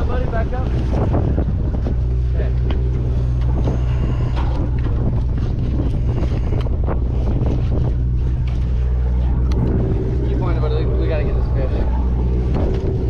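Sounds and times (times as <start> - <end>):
boat engine droning: 0.0 - 13.0
wind buffeting microphone: 0.0 - 13.0.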